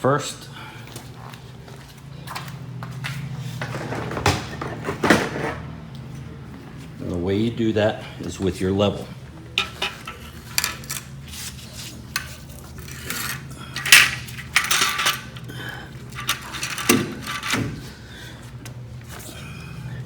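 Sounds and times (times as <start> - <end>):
steady low hum: 0.0 - 20.0
metal clinks and knocks: 12.2 - 17.8.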